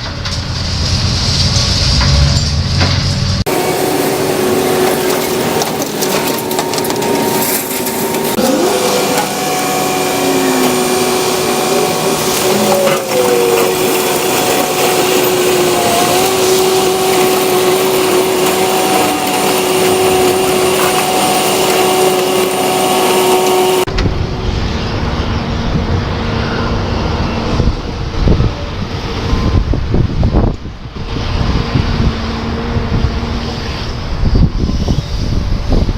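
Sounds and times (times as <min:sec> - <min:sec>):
construction machinery whining: 0:00.0 - 0:35.9
wind rumbling on microphone: 0:23.9 - 0:35.9.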